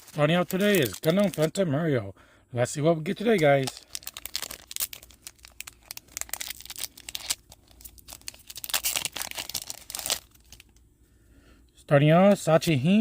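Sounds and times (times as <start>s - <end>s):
foil card pack tearing and crinkling: 0.0s - 1.6s, 3.2s - 10.7s.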